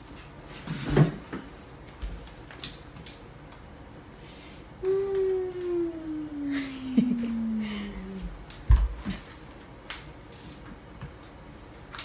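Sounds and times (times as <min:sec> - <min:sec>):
person humming: 0:04.8 - 0:08.4.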